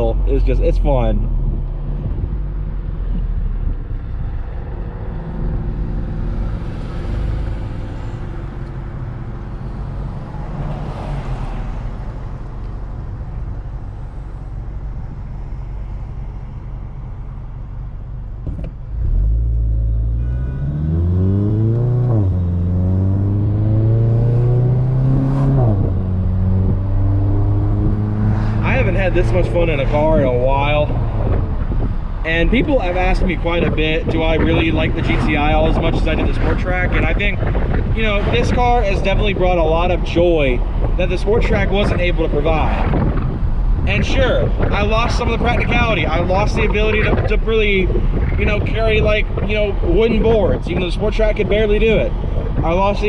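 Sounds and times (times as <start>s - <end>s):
road noise: 0.0s - 53.0s
car engine from inside cabin: 0.1s - 32.4s.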